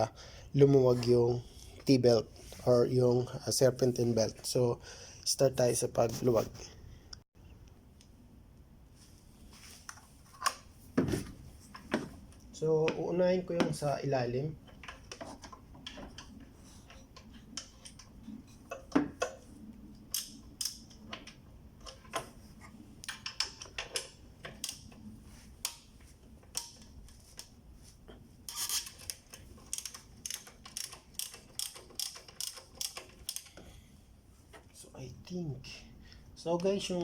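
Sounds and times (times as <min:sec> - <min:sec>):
ratchet wrench clicking: 0:29.7 - 0:33.5.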